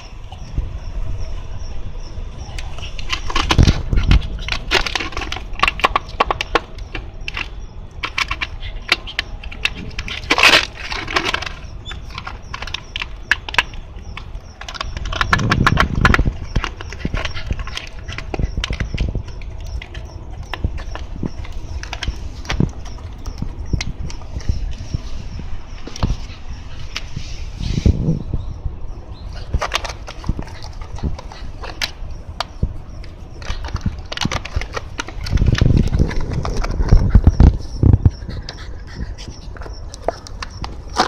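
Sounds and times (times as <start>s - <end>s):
dog chewing plastic bottle: 2.9s - 24.7s, 29.4s - 32.6s, 33.4s - 41.0s.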